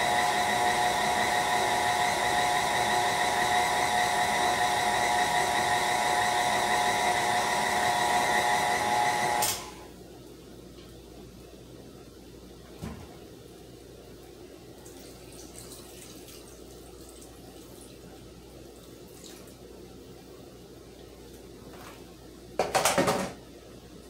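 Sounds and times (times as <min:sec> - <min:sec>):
stand mixer motor whining: 0:00.0 - 0:09.8.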